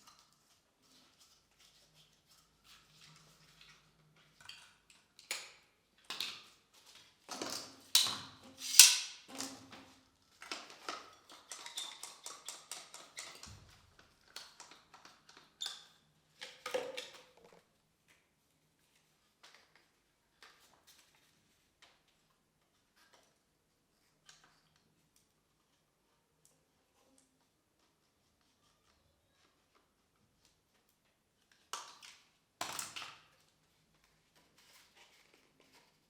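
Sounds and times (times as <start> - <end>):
objects knocking and scraping: 7.4 - 9.6.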